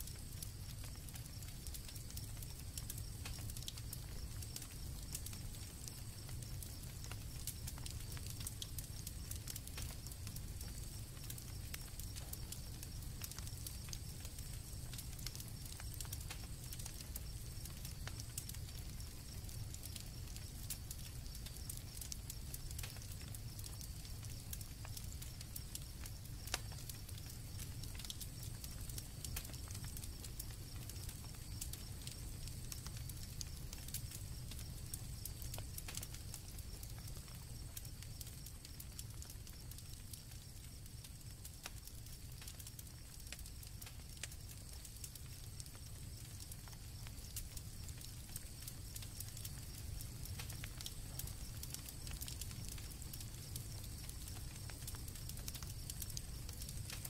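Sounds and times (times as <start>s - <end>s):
campfire crackling and popping: 0.0s - 57.0s
crickets chirping: 0.0s - 57.0s
low fire rumble: 0.0s - 57.0s.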